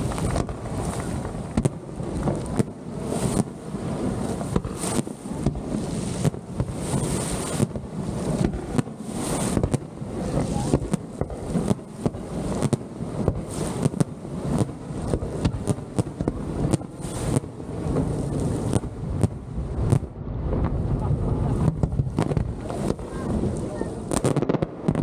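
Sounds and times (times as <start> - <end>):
fireworks bangs and cracks: 0.0 - 25.0
wind on microphone: 0.0 - 25.0
low rumble: 17.6 - 24.2.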